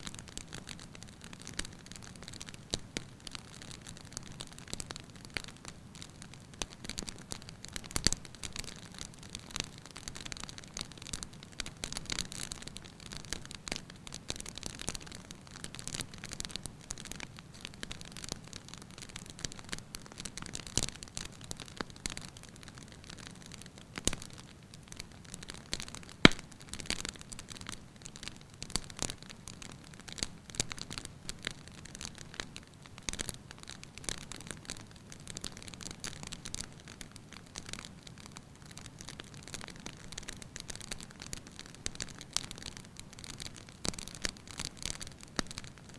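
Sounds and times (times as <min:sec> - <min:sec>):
wood fire crackling: 0:00.0 - 0:45.9.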